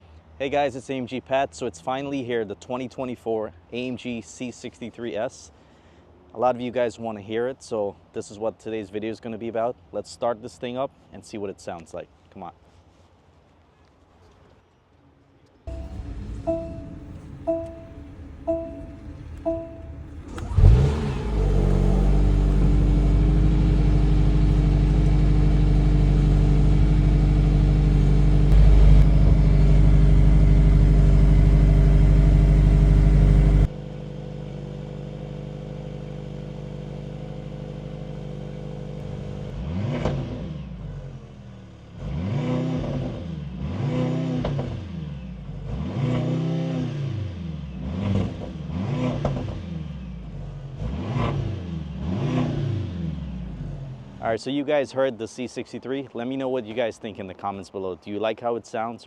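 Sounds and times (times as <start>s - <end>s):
engine revving blips: 15.7s - 33.8s, 42.0s - 54.1s
car engine starting and idling: 15.7s - 42.1s.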